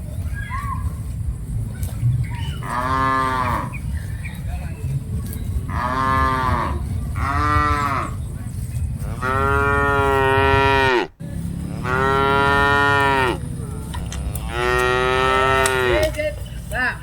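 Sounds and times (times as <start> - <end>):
low rumble: 0.0 - 17.0
cattle mooing: 2.6 - 3.7, 5.7 - 8.2, 9.0 - 16.1.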